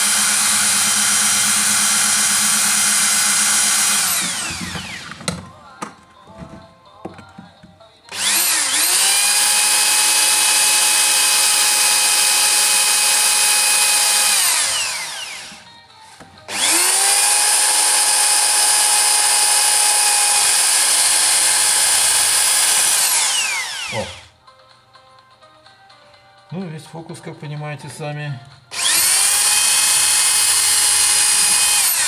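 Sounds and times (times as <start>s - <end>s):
electric drill whining: 0.0s - 6.6s, 8.0s - 15.8s, 16.4s - 24.4s, 28.7s - 32.0s.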